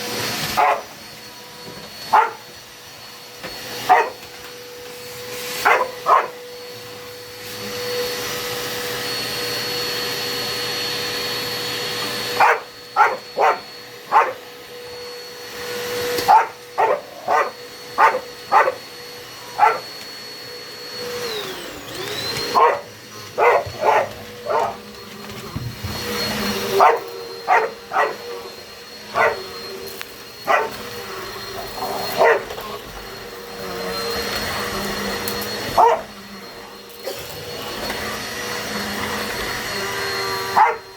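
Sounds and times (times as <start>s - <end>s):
vacuum cleaner motor whining: 0.0s - 40.9s
dog barking: 0.5s - 0.9s, 2.1s - 2.4s, 3.8s - 4.2s, 5.6s - 6.4s, 12.3s - 14.5s, 16.2s - 18.8s, 19.5s - 19.9s, 22.5s - 24.9s, 26.7s - 28.4s, 29.1s - 29.6s, 30.4s - 30.9s, 31.8s - 32.8s, 35.6s - 36.2s, 40.5s - 40.9s.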